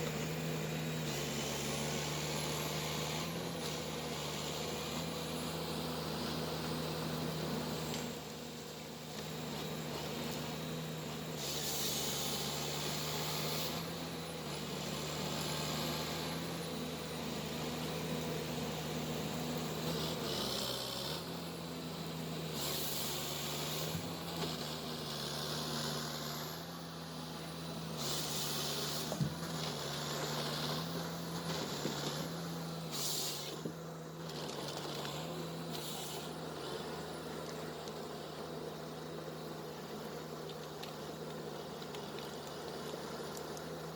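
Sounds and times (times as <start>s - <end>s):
diesel engine running: 0.0s - 43.9s
short hissing bursts: 11.4s - 13.8s, 32.8s - 33.6s.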